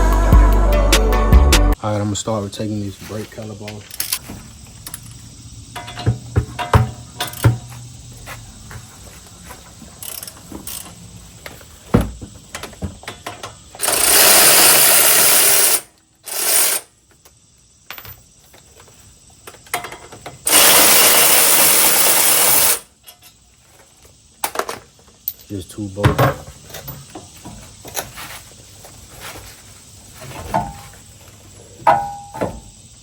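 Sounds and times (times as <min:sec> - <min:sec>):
tools and parts clinking: 0:03.6 - 0:07.8, 0:10.0 - 0:28.4, 0:30.2 - 0:32.7
power tool running: 0:13.8 - 0:16.9, 0:20.5 - 0:22.9.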